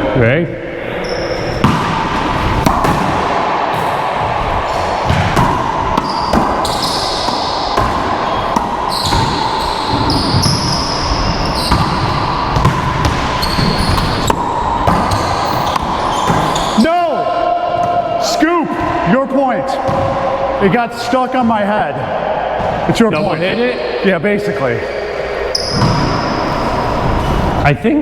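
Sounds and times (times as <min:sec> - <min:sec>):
sneakers squeaking on court floor: 0:00.9 - 0:17.0, 0:19.7 - 0:20.6, 0:24.8 - 0:27.6
ball hitting racquets and walls: 0:01.0 - 0:23.9, 0:24.8 - 0:27.6.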